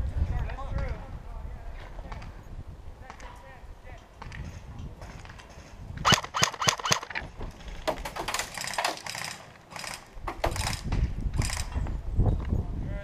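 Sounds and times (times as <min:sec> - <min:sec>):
airsoft guns firing: 0:06.0 - 0:11.6.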